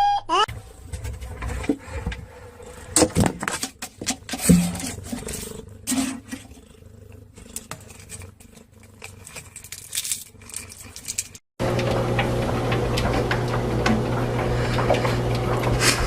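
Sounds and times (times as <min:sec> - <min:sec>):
cat growling: 0:02.2 - 0:03.2, 0:04.1 - 0:11.1
knocks and rustles: 0:02.9 - 0:06.6.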